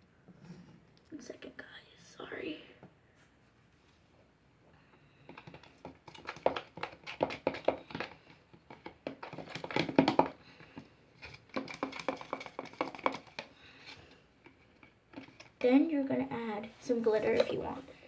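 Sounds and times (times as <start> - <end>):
hands handling objects clicking: 5.2 - 13.5.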